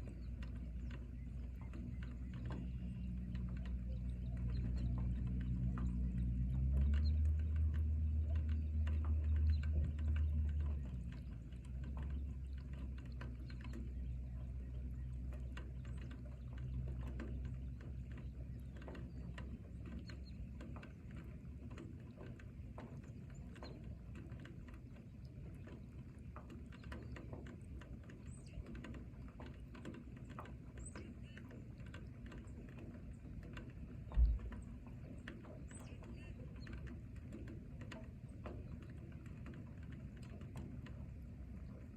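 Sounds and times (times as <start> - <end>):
strong low rumble: 0.0 - 20.6, 34.0 - 34.8
raindrops ticking: 0.0 - 41.9.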